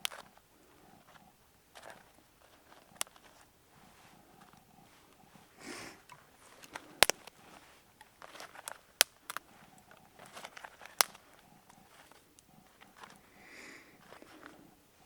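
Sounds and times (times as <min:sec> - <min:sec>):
soft rustling: 0:00.0 - 0:15.0
sharp snaps: 0:06.1 - 0:07.4, 0:08.0 - 0:13.2.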